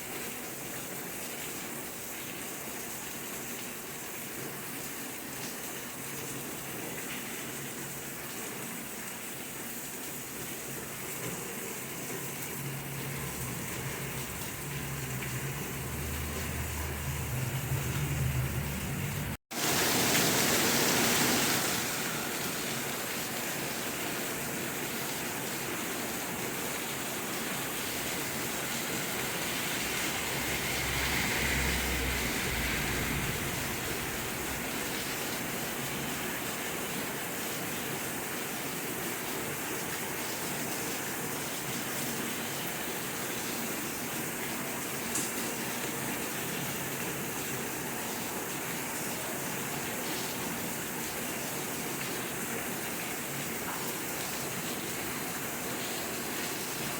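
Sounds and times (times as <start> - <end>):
steady rain falling: 0.0 - 56.9
low rumble: 12.5 - 19.4, 27.6 - 36.2.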